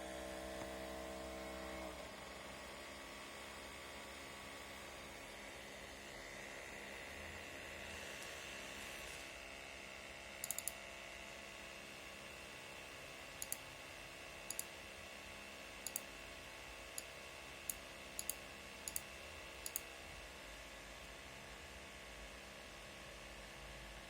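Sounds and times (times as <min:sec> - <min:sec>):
faint hiss and hum: 0:00.0 - 0:24.0
sharp small clicks: 0:10.4 - 0:10.8, 0:13.4 - 0:13.6, 0:14.5 - 0:14.7, 0:15.8 - 0:16.1, 0:17.7 - 0:19.9.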